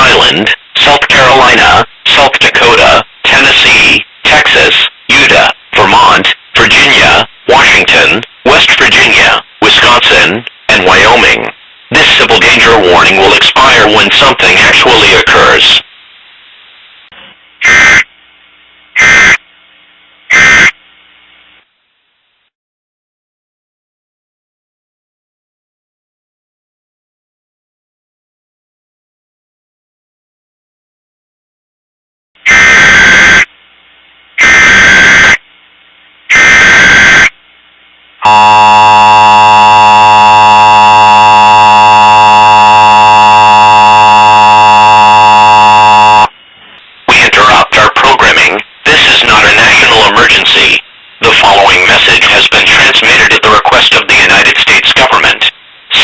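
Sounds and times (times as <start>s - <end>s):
two-tone attention signal: 38.2s - 46.3s.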